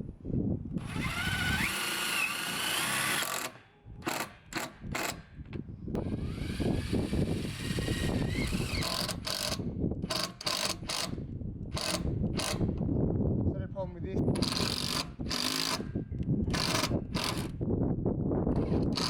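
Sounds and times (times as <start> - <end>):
cordless drill motor whine: 0.8 - 5.1, 6.0 - 11.1, 11.8 - 12.6, 14.4 - 15.9, 16.5 - 17.6, 18.6 - 19.0.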